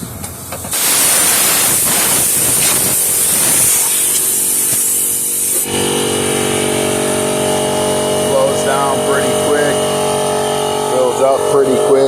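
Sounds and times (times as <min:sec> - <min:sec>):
air compressor motor humming: 0:00.0 - 0:12.0
compressed air hissing: 0:00.5 - 0:05.8.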